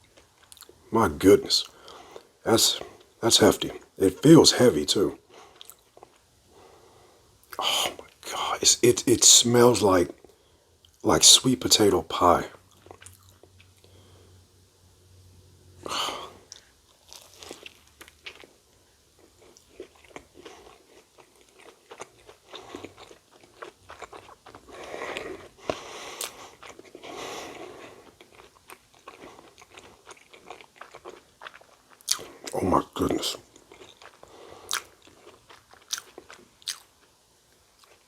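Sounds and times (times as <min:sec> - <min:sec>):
wet chewing with small crunches: 0:05.4 - 0:06.3, 0:12.6 - 0:14.0, 0:16.5 - 0:38.0.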